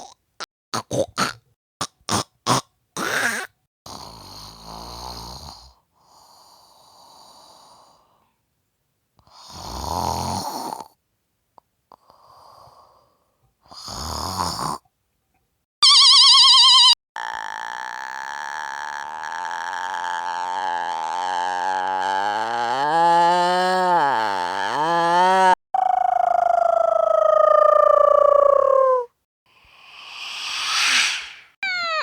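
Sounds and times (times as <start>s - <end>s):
rattly snoring: 17.2s - 25.6s
airy out-breaths: 29.6s - 32.0s.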